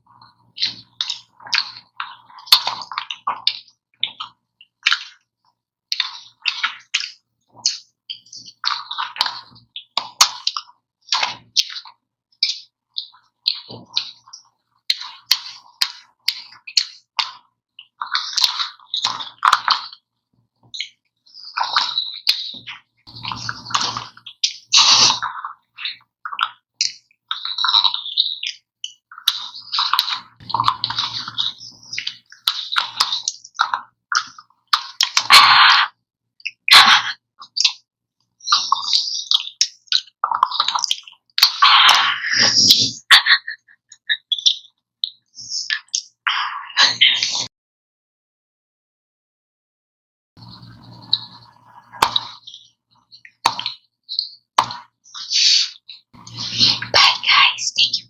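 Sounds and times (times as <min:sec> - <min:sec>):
chewing and crunching ice cream: 0:00.6 - 0:20.1, 0:20.8 - 0:37.8, 0:38.4 - 0:42.2
mouth clicks: 0:20.8 - 0:37.8, 0:38.4 - 0:47.5, 0:50.4 - 0:58.0.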